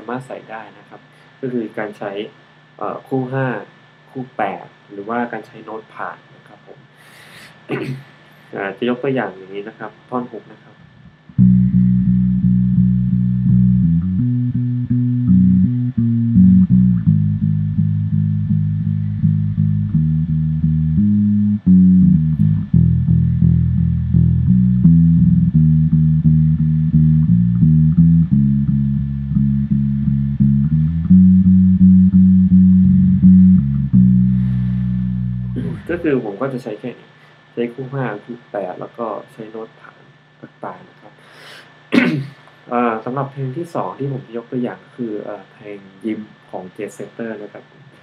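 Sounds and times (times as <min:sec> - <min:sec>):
electric bass guitar line: 0:10.8 - 0:36.4.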